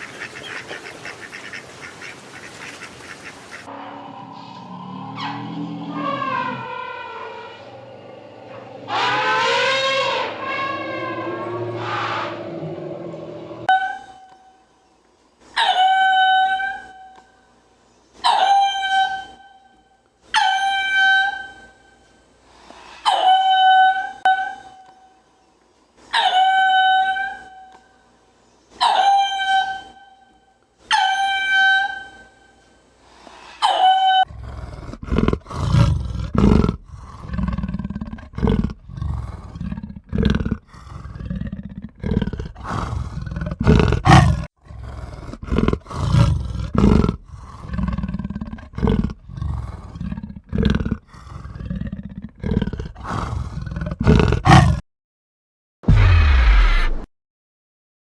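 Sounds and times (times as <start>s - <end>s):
animal roaring grunts: 3.7s - 13.7s, 34.3s - 54.8s.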